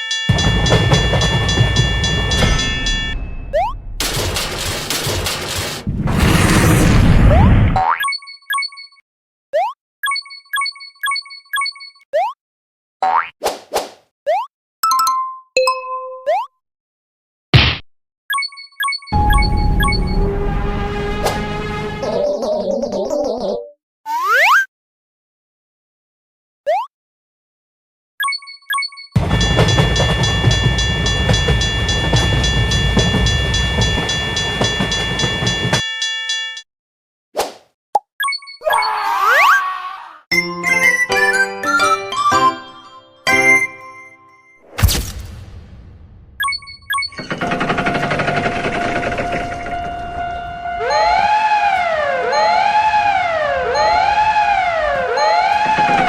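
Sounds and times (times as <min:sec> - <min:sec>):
fast repeating train clatter: 0:00.1 - 0:03.2, 0:04.0 - 0:05.9, 0:29.2 - 0:35.8, 0:47.2 - 0:50.2
chime dings: 0:28.2 - 0:36.6
train passing: 0:29.2 - 0:35.8
wailing siren: 0:29.2 - 0:35.8, 0:48.9 - 0:56.0.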